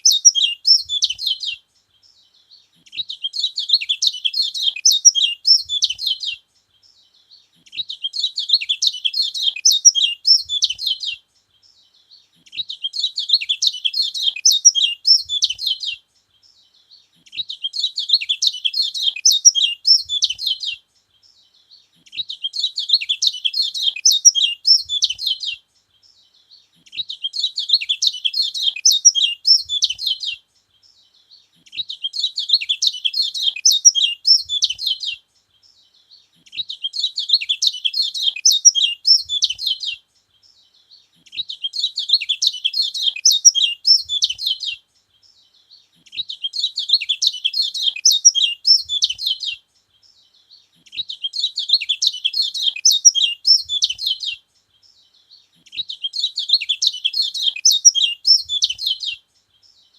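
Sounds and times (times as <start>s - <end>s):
songbird chattering song: 0.0s - 59.9s.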